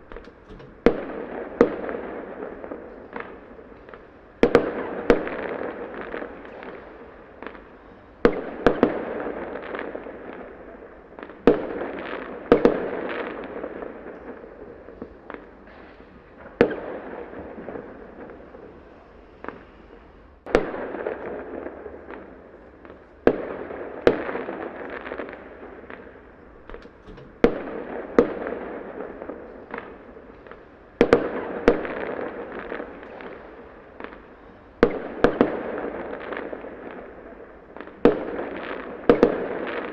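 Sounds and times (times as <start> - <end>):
fireworks banging: 0.0 - 39.9
fireworks crackling and fizzing: 0.0 - 39.9.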